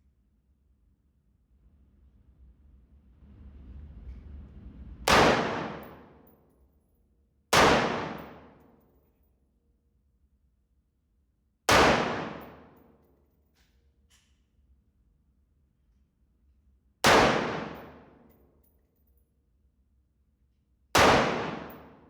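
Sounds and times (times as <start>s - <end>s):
gunshots: 5.1s - 6.0s, 7.6s - 8.5s, 11.7s - 12.7s, 17.1s - 18.0s, 21.0s - 22.0s.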